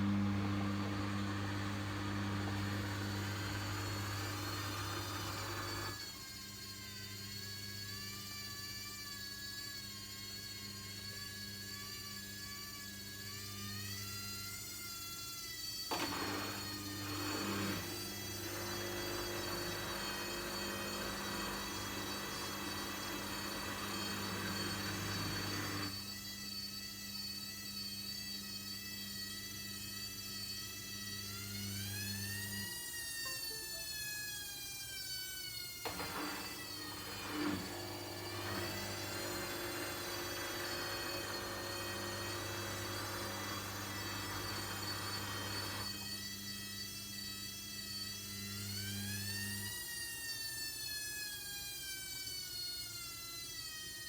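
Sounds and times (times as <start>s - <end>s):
washing machine hum: 0.0s - 6.0s, 16.0s - 25.9s, 35.9s - 46.0s
motor whine: 0.0s - 54.0s.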